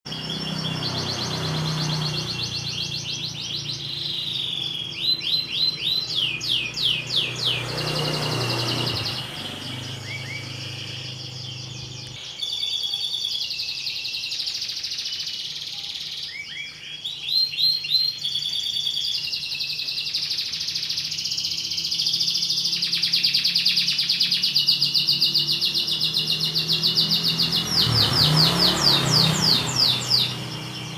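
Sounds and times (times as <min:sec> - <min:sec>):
canary singing trills: 0:00.0 - 0:30.9.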